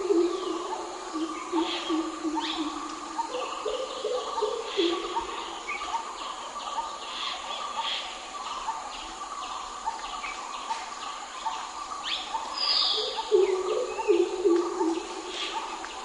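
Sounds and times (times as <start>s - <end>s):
birds calling and chirping: 0.0s - 16.0s.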